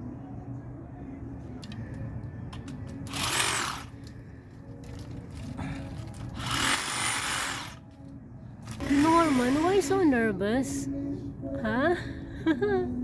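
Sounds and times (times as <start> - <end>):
power trimmer motor running: 3.0 - 3.9, 6.4 - 7.8, 8.7 - 9.7.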